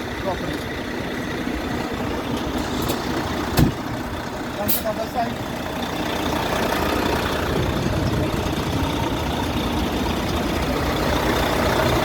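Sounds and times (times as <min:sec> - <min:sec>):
truck engine idling: 0:00.0 - 0:12.0.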